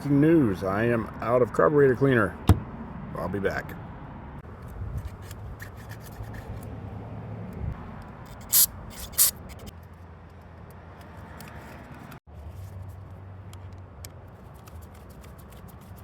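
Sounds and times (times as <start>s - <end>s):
small metal parts being scraped: 5.0s - 6.7s, 8.3s - 9.7s.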